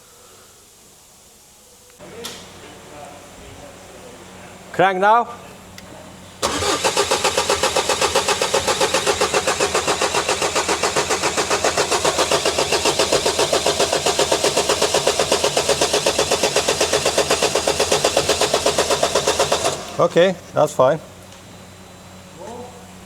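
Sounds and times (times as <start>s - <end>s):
engine cranking without starting: 6.4s - 20.3s.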